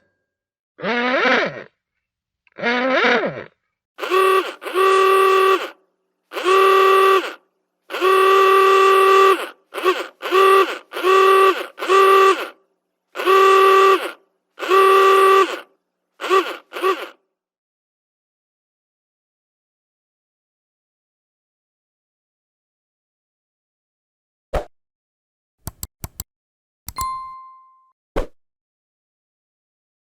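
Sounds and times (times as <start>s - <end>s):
old car horn honking: 4.0s - 5.8s, 6.4s - 12.6s, 13.2s - 15.6s.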